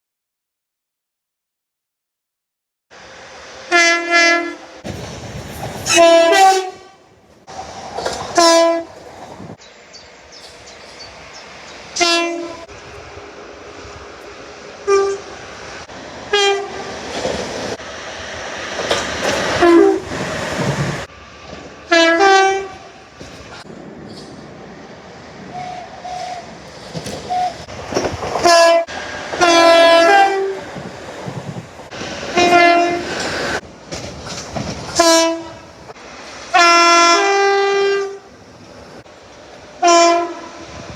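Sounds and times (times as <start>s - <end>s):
trains running on rails: 2.9s - 40.9s
train horn blasts: 3.7s - 4.7s, 5.8s - 7.1s, 8.3s - 9.0s, 12.0s - 12.7s, 14.8s - 15.4s, 16.3s - 16.9s, 19.6s - 20.1s, 21.9s - 23.0s, 28.4s - 30.7s, 32.3s - 33.2s, 35.0s - 35.7s, 36.5s - 38.3s, 39.8s - 40.8s.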